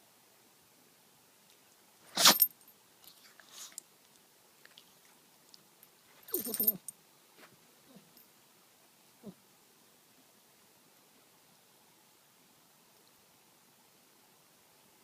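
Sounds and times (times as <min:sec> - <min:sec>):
small dog sneezing: 0:02.1 - 0:02.5
faint snuffling: 0:03.1 - 0:03.9.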